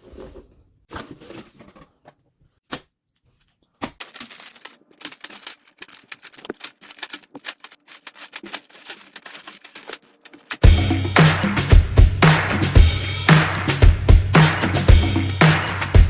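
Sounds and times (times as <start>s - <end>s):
packaging clicks: 4.0s - 10.6s
plastic bricks rattling: 4.0s - 10.6s.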